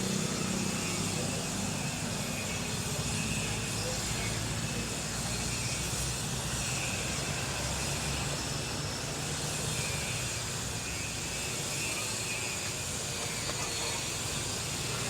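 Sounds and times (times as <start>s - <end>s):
street noise hiss: 0.0s - 15.0s.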